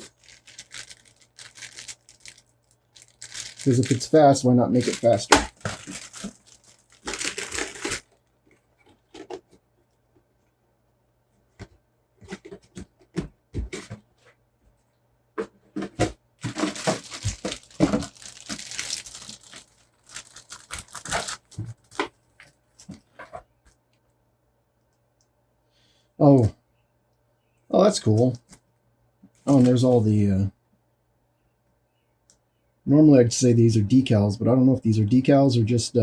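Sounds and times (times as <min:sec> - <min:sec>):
plastic packaging crinkling: 0:00.0 - 0:09.6, 0:16.4 - 0:23.4, 0:29.5 - 0:30.0.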